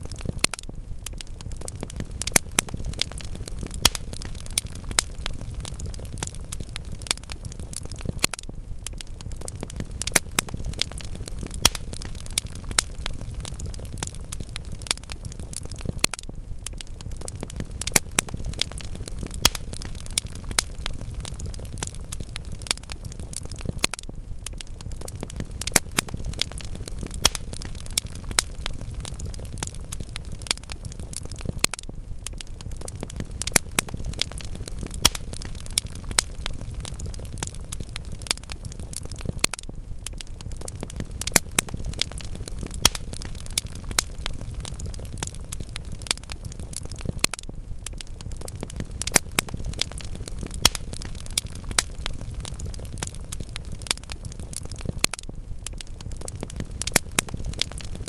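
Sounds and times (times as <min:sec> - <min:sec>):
logs crackling and popping: 0:00.0 - 0:58.0
low rumble of flames: 0:00.0 - 0:58.0.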